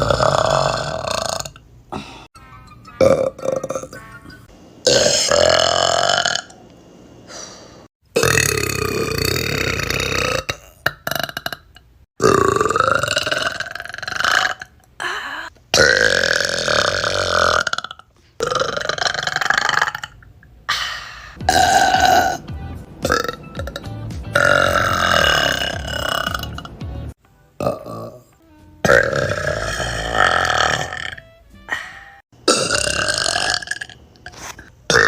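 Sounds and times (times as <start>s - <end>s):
women burping loudly: 15.8s - 20.2s, 21.5s - 22.4s, 23.0s - 26.7s, 28.8s - 34.0s.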